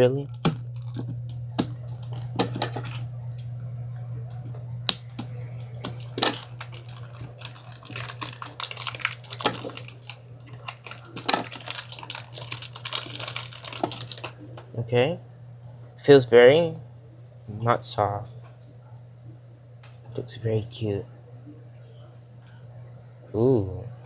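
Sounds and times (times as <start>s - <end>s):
plastic wrapping crinkling: 0.0s - 3.0s, 5.1s - 14.4s
steady low hum: 0.0s - 24.0s.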